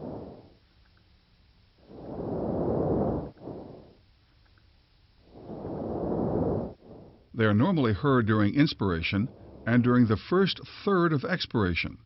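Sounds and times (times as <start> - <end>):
breath sounds over lungs: 0.0 - 0.6, 1.8 - 4.1, 5.2 - 7.4, 9.0 - 10.7.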